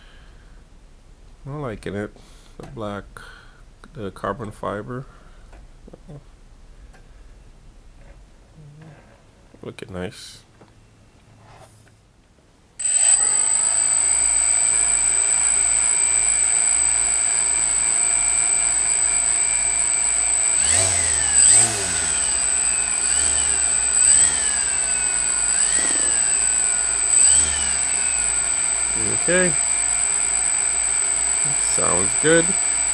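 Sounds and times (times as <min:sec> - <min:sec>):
quadcopter motors whining: 0:12.8 - 0:32.9.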